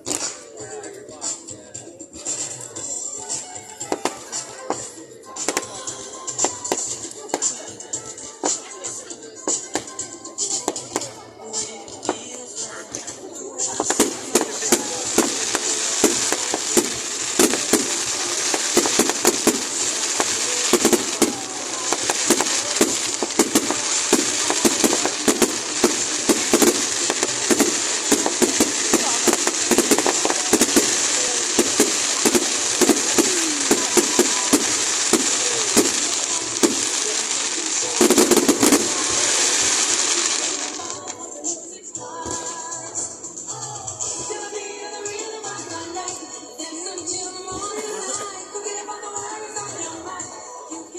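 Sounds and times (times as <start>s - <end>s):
fireworks bangs and crackling: 0.0s - 0.6s, 2.2s - 41.2s.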